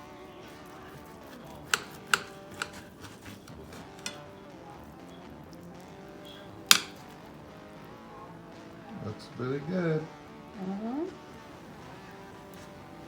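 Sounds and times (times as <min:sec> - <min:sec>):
soft background music: 0:00.0 - 0:13.0
cutlery clinking on a plate: 0:00.6 - 0:05.1, 0:06.3 - 0:07.3, 0:11.5 - 0:13.0.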